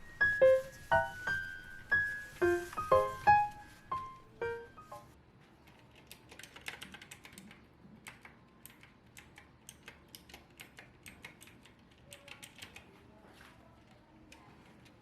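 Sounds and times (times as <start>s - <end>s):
typing on mechanical keyboard: 5.6s - 13.0s.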